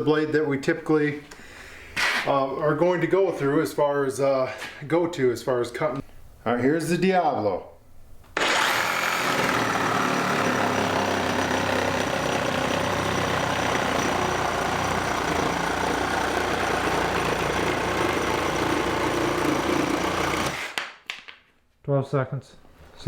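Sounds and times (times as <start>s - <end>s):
reciprocating saw cutting wood: 8.4s - 20.8s.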